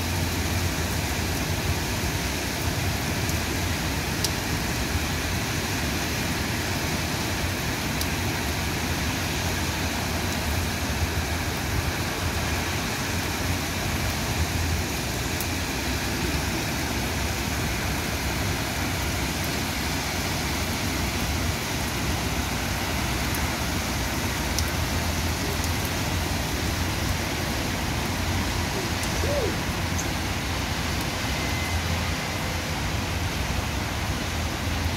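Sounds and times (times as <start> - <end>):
heavy rain pouring: 0.0 - 34.9
raindrops ticking: 21.9 - 31.7.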